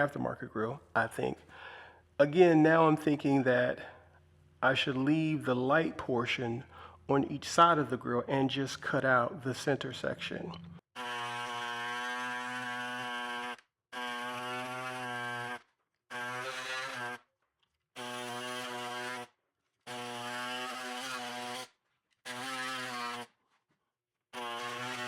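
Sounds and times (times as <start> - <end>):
power tool cutting with humming whine: 11.0 - 17.2, 18.0 - 19.3, 19.9 - 21.7, 22.3 - 23.3, 24.4 - 25.0.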